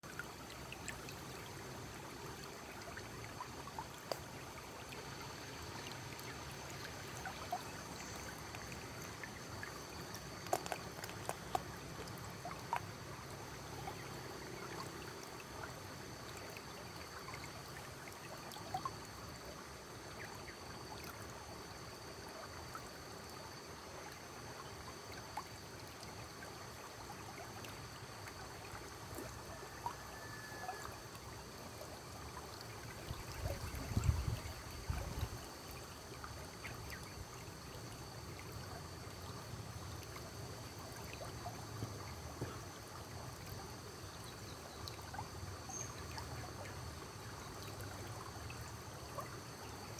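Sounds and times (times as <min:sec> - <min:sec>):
small clicks and drips: 0:00.0 - 0:49.9
water trickling: 0:00.0 - 0:49.9.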